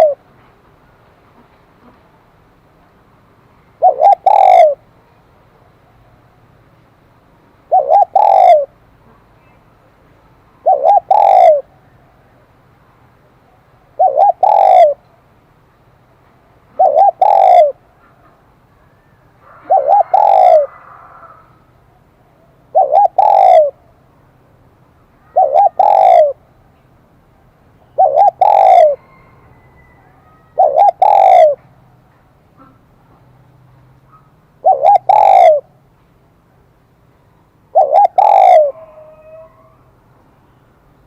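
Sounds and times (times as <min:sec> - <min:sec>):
dove cooing: 0:00.0 - 0:00.2, 0:03.8 - 0:04.8, 0:07.7 - 0:09.2, 0:10.6 - 0:11.7, 0:13.9 - 0:15.0, 0:16.7 - 0:18.4, 0:19.4 - 0:21.6, 0:22.7 - 0:23.8, 0:25.2 - 0:26.4, 0:27.9 - 0:31.7, 0:34.6 - 0:35.7, 0:37.7 - 0:39.9.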